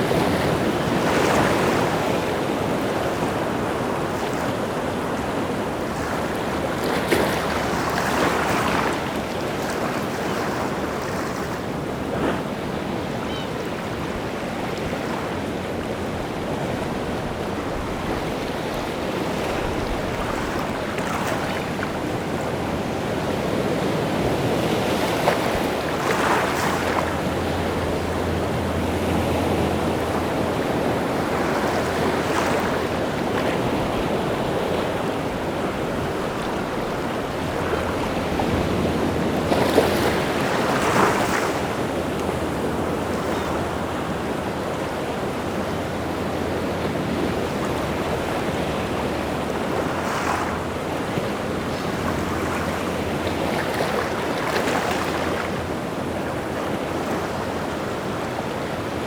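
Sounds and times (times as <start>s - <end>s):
wind: 0.0s - 59.0s.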